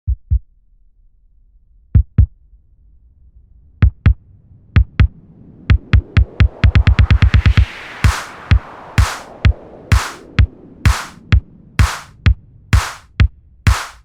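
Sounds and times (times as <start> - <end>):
heartbeat thumps: 0.0 - 0.4, 2.0 - 2.3, 3.8 - 4.2, 4.8 - 5.1, 5.7 - 14.0
faint rising hum: 2.7 - 14.0.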